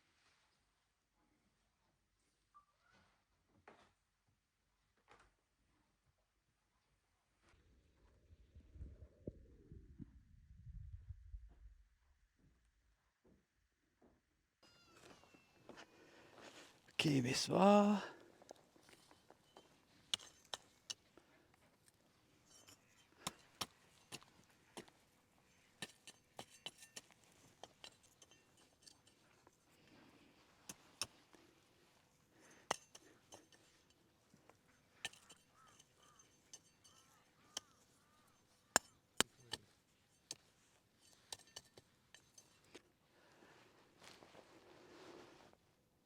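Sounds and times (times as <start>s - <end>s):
light clinks of hard objects: 14.6s - 43.0s
sharp clicks of hard objects: 35.0s - 42.8s.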